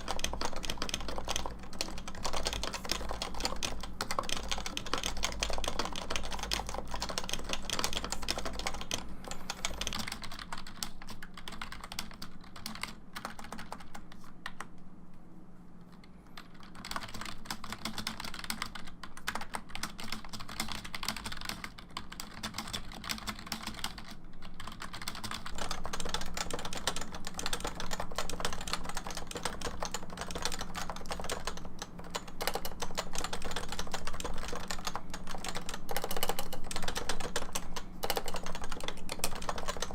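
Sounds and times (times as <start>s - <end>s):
fast typing on keyboard: 0.0s - 14.7s, 16.4s - 39.9s.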